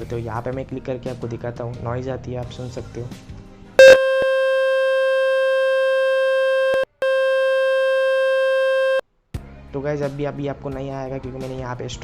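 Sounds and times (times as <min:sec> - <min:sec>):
buzzy electronic tone: 0:03.8 - 0:09.0.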